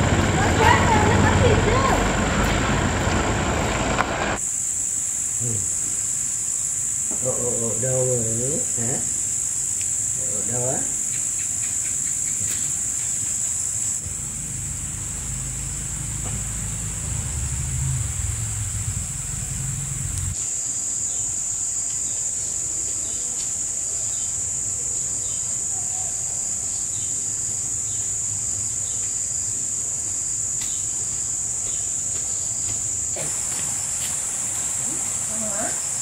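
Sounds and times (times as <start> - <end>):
low engine-like rumble: 0.0 - 4.4, 14.0 - 20.4
insects droning: 0.0 - 36.0.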